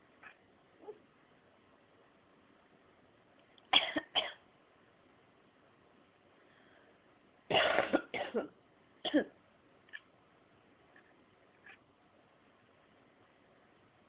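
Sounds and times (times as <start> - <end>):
person coughing: 3.8 - 4.4, 7.5 - 9.4.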